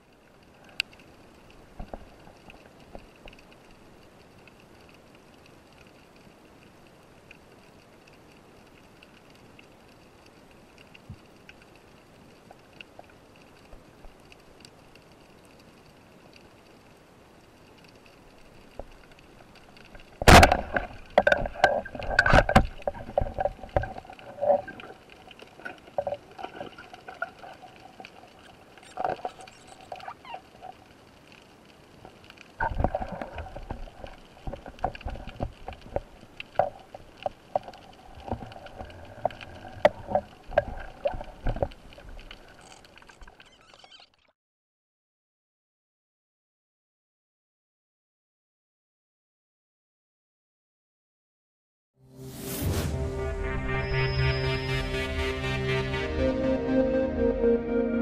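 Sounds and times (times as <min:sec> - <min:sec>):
underwater water sounds: 0:00.0 - 0:44.4.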